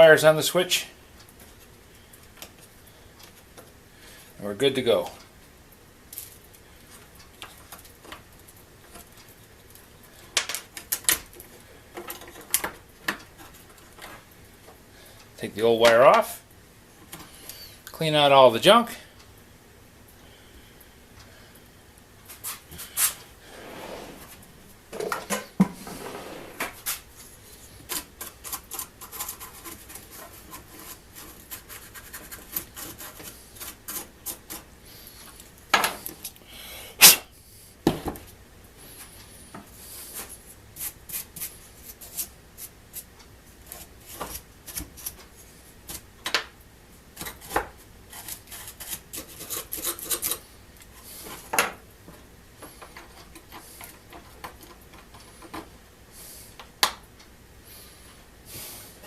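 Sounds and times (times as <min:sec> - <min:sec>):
small clicks and taps of tools: 0:06.1 - 0:14.8.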